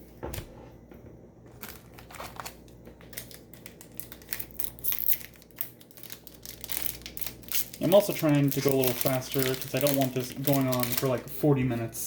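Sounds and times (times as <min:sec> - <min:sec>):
foil wrapper crinkling: 0:01.5 - 0:11.5.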